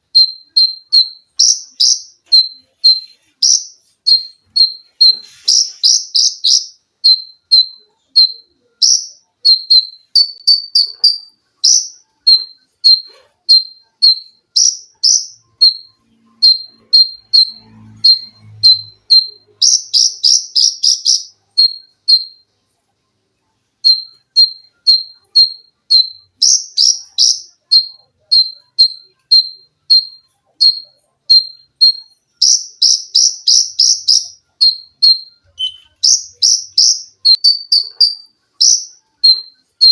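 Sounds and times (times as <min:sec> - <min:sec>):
small bird singing high chips: 0:00.0 - 0:22.4, 0:23.8 - 0:39.9.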